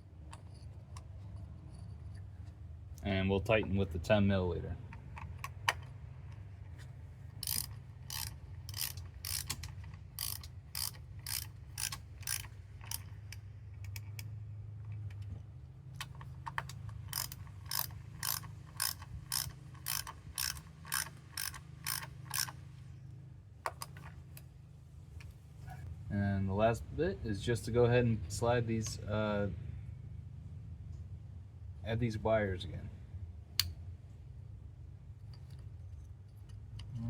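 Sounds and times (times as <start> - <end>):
ratchet wrench clicking: 7.3 - 14.3, 16.0 - 22.6.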